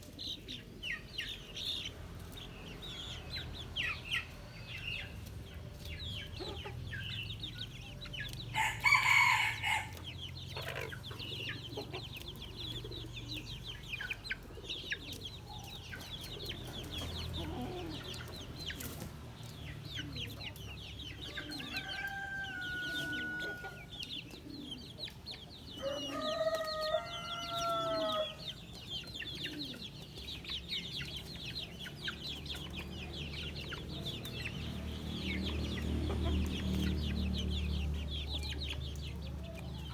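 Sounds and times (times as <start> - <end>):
chickens clucking: 0.0 - 39.9
small birds peeping: 0.0 - 39.9
rooster crowing: 8.5 - 10.0, 21.5 - 23.8, 25.8 - 28.4.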